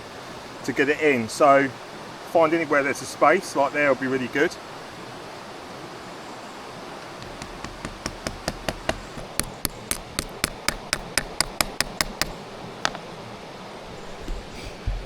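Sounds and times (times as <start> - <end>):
stone tapping coin into wood: 7.0 - 13.1.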